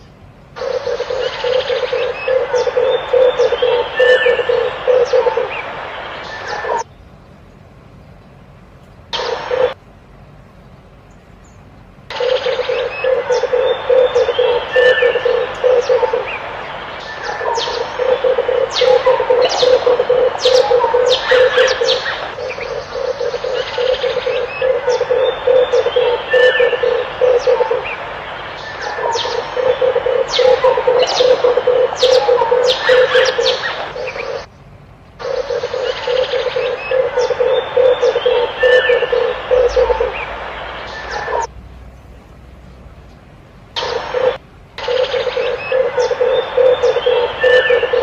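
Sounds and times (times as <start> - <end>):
small birds chirping: 0.0 - 9.8, 10.6 - 48.0
doves cooing: 0.6 - 6.8, 9.2 - 9.8, 12.1 - 34.5, 35.2 - 41.5, 43.8 - 48.0.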